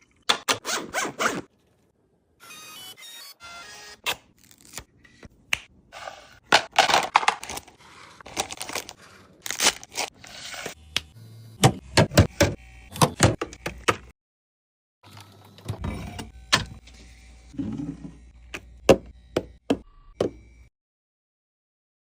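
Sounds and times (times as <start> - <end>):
plastic packaging crinkling: 6.7 - 10.1.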